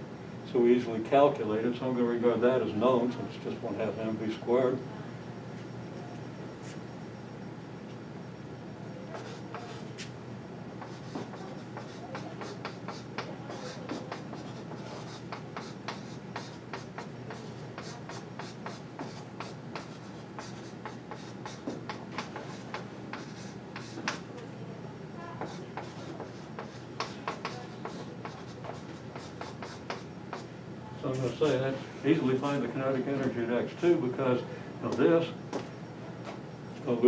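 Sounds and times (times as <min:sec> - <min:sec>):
low room hum: 0:00.0 - 0:37.0
pen tapping and scratching: 0:10.8 - 0:24.2, 0:25.4 - 0:30.4.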